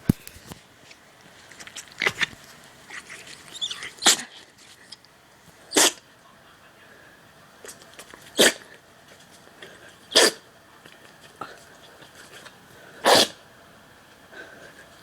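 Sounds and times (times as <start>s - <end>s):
dog sneezing: 3.0s - 4.4s, 5.7s - 6.0s, 8.2s - 8.8s, 10.1s - 10.5s, 13.0s - 13.4s.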